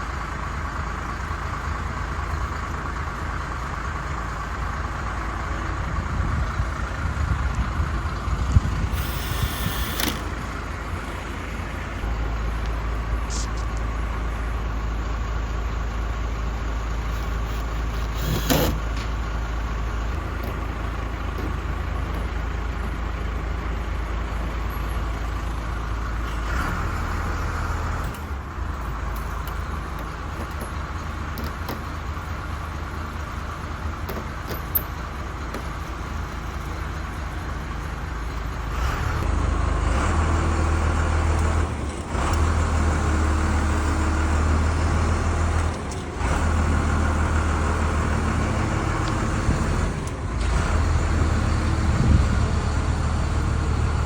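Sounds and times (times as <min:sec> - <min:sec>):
engine humming: 0:00.0 - 0:54.0.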